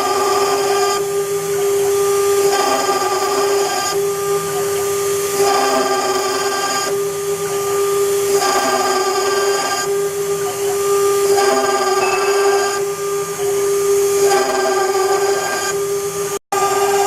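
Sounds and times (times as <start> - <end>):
harsh metal cutting noise: 10.8 - 17.0.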